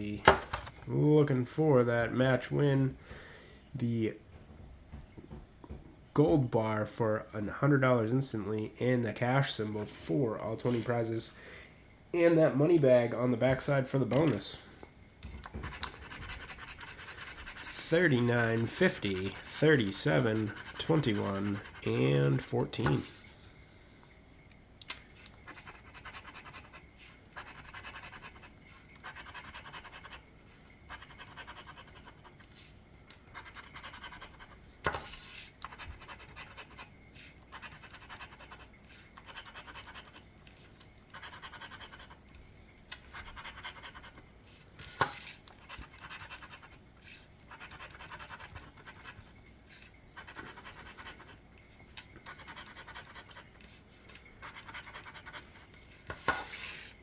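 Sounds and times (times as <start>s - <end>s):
scratch-off ticket scraping: 15.6s - 23.2s, 25.4s - 30.3s, 54.4s - 55.6s.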